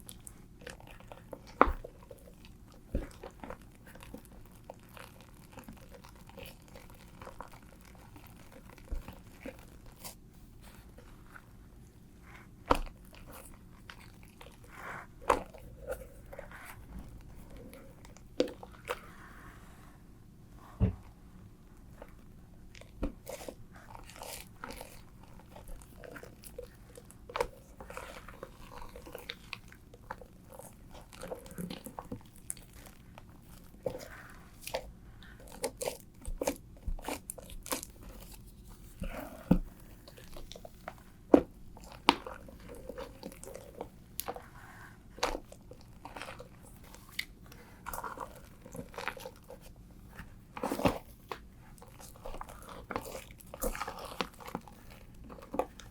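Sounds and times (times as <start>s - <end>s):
slime crackling and popping: 0.0s - 10.2s, 22.0s - 55.9s.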